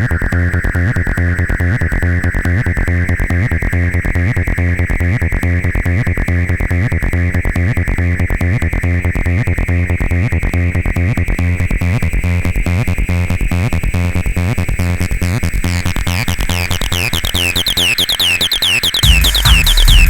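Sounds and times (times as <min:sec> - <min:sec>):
acid techno music: 0:00.0 - 0:20.0
high rising synth tone: 0:17.8 - 0:20.0.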